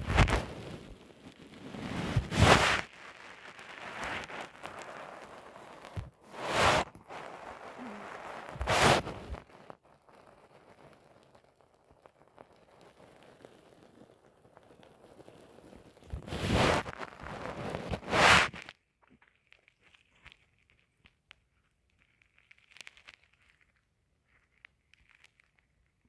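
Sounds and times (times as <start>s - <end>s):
crackling gut noises: 0.0s - 13.5s
low stomach gurgle: 4.6s - 11.0s.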